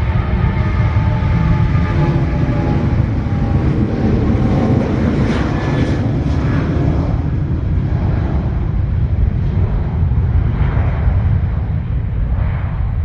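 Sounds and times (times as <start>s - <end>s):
faint engine whine: 0.0s - 13.0s
jet engines rumbling: 0.0s - 13.0s.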